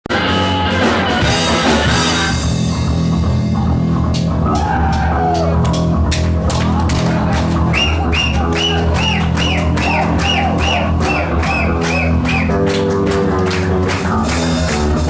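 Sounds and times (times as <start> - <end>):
electric bass line: 0.0 - 15.0
rock band playing live: 0.0 - 15.0.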